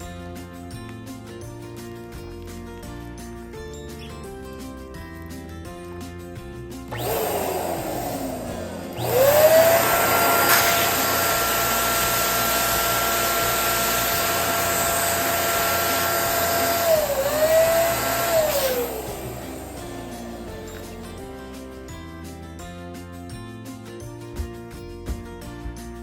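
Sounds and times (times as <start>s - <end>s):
balloon inflator motor whine: 6.9s - 22.0s.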